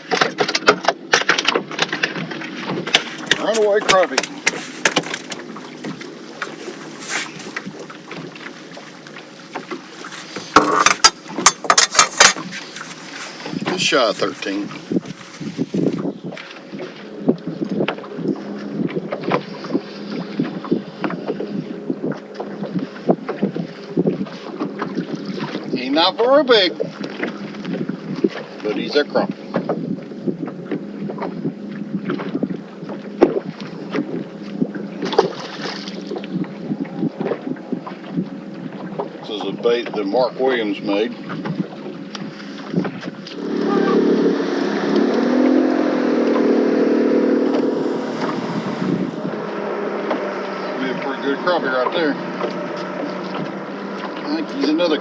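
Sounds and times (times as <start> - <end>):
fish flopping in a boat: 0.0 - 55.0
wind on microphone: 0.0 - 55.0
handling and scuffling: 1.6 - 16.1
steady low hum: 41.2 - 51.4.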